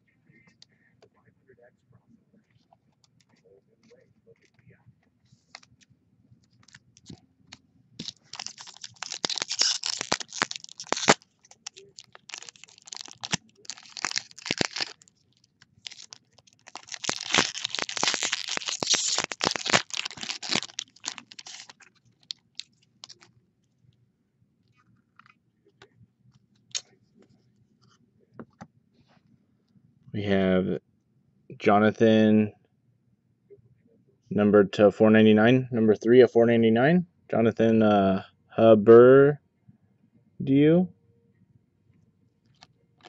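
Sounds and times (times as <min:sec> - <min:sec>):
foil wrapper crinkling and tearing: 0:08.0 - 0:23.3.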